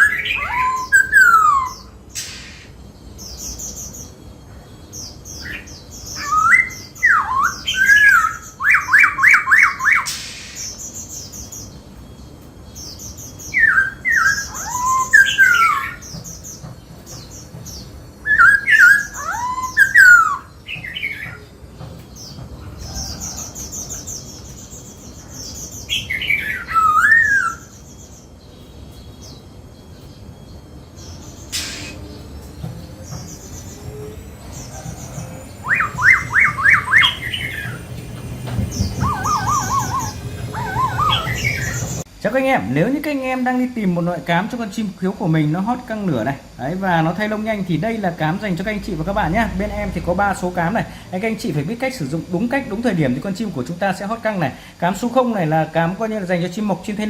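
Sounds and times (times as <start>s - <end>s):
bird whistling gliding notes: 0.0s - 16.7s, 17.4s - 42.1s
bird chattering notes: 30.9s - 42.0s.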